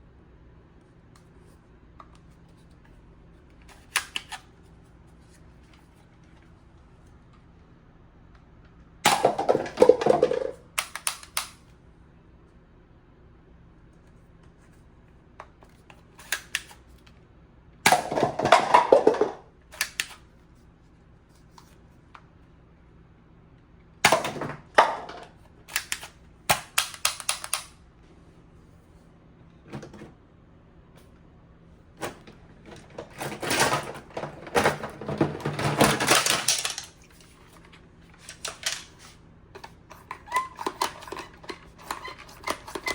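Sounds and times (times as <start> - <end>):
toy gun plastic clicking and rattling: 9.1 - 11.6, 16.2 - 16.8, 17.9 - 20.2, 24.1 - 27.8, 35.7 - 42.9.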